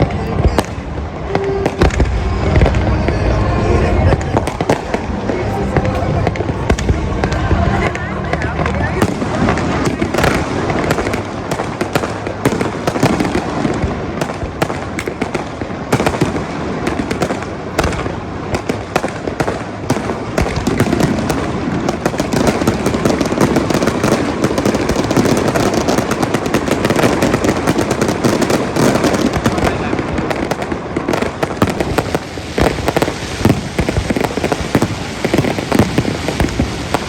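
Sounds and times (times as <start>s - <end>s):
fireworks bangs and crackling: 0.0s - 37.0s.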